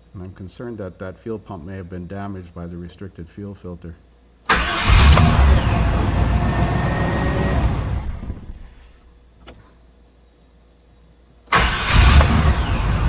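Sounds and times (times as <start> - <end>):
truck engine cranking on starter: 4.5 - 9.1, 11.5 - 13.0.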